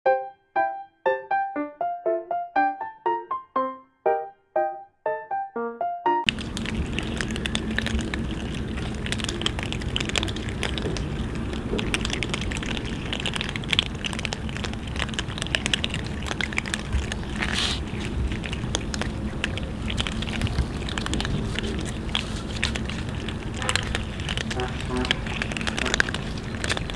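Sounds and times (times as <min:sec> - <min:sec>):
cats chewing and crunching food: 0:06.3 - 0:26.9
steady low hum: 0:06.3 - 0:26.9.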